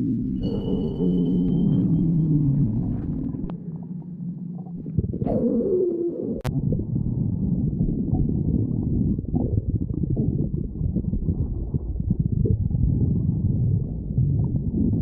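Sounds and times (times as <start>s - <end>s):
stomach growling: 0.0s - 15.0s.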